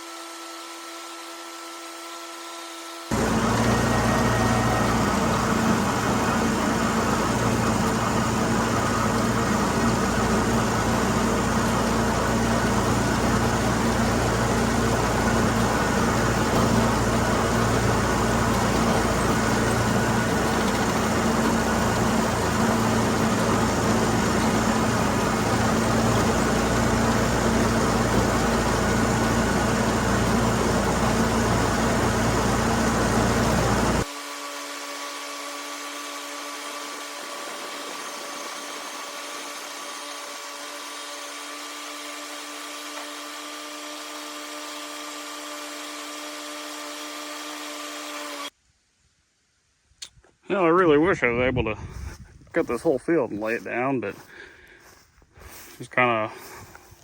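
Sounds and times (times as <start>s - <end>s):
tractor engine running: 3.1s - 34.1s, 36.8s - 40.4s, 51.8s - 57.0s.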